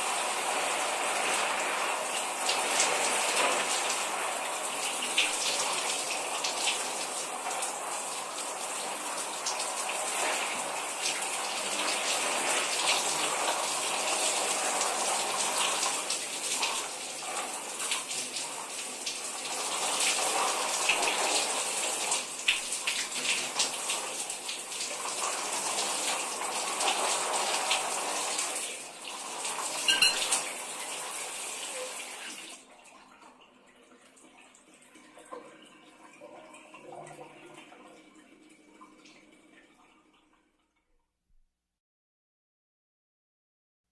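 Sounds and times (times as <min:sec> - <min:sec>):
shower water spraying: 0:00.0 - 0:32.6.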